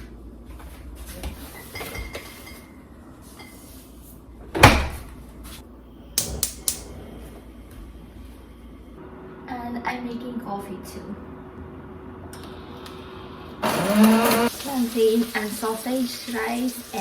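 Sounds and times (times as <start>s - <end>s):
sharp clicks: 6.2s - 6.8s.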